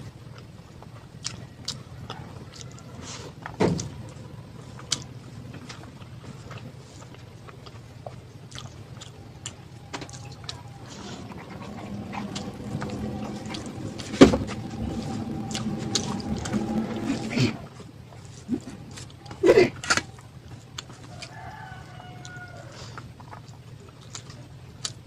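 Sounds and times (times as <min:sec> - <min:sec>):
wet eating clicks and squelches: 0:00.2 - 0:12.9, 0:18.9 - 0:25.0
low steady hum: 0:03.8 - 0:22.7.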